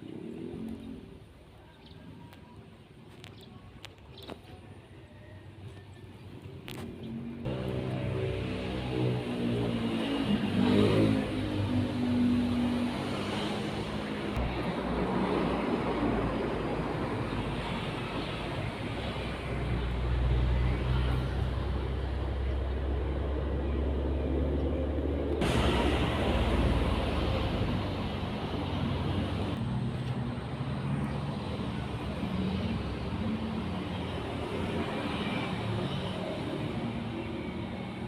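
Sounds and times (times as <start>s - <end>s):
steady low rumble: 21.8s - 32.1s.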